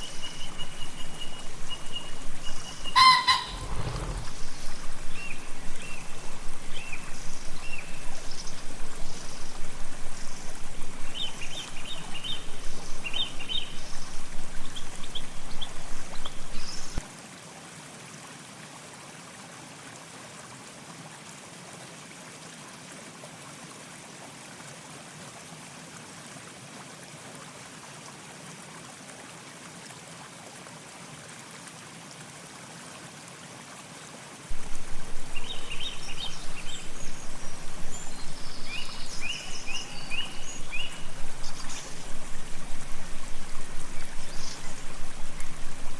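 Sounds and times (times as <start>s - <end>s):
small birds chirping: 0.0s - 17.0s, 34.5s - 45.9s
water trickling: 0.0s - 17.0s, 34.5s - 45.9s
faint steady hiss: 0.0s - 17.9s, 34.2s - 45.9s.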